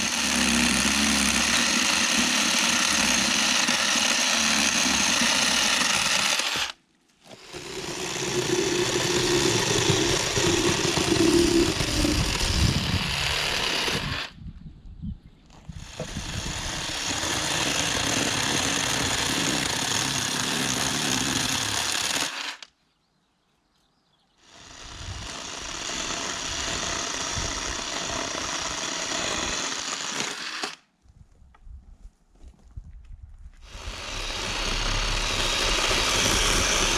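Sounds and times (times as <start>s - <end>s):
electric chainsaw running: 0.0s - 14.4s, 15.8s - 22.7s, 24.4s - 30.8s, 33.6s - 36.9s.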